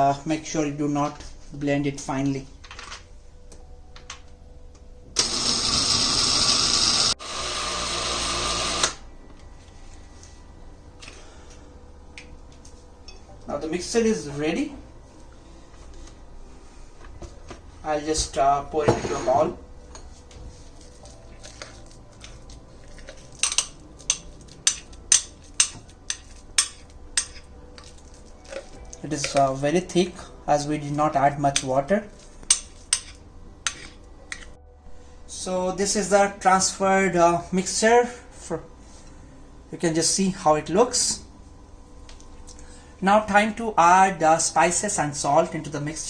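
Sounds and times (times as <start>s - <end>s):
electric blender grinding: 5.2s - 9.0s.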